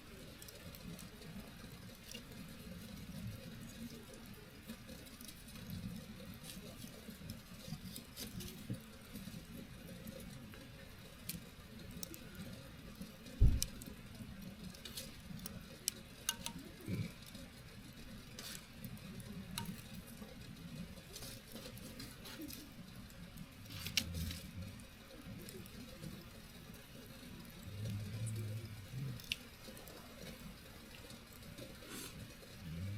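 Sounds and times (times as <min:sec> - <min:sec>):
campfire crackling: 0:00.0 - 0:32.9
burning wood snapping: 0:14.7 - 0:17.0, 0:19.5 - 0:20.2, 0:27.5 - 0:32.8.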